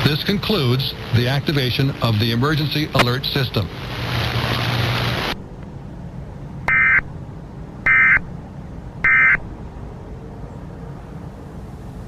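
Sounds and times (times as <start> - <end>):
digital data tone bursts: 7.9 - 8.2, 9.0 - 9.4.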